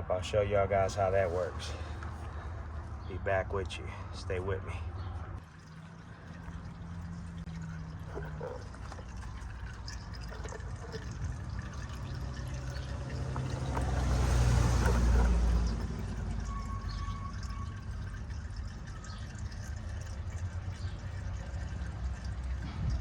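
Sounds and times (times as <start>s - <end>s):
oil pouring into drain pan: 5.4s - 23.0s.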